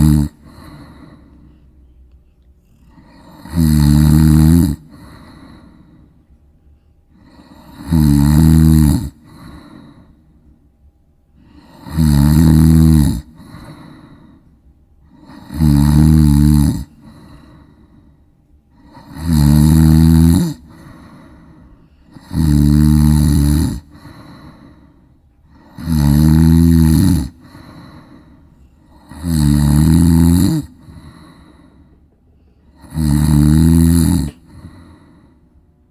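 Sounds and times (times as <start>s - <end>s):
dog snoring: 0.0s - 1.4s, 2.6s - 6.0s, 7.1s - 10.1s, 11.4s - 14.3s, 15.0s - 17.8s, 18.7s - 21.5s, 22.1s - 24.8s, 25.5s - 31.8s, 32.6s - 35.3s.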